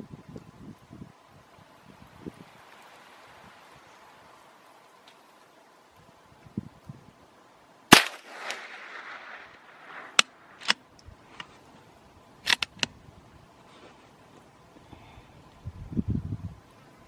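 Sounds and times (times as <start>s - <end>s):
rifle shot echoing: 7.9s - 10.8s
sharp clicks: 7.9s - 11.6s, 12.5s - 12.9s.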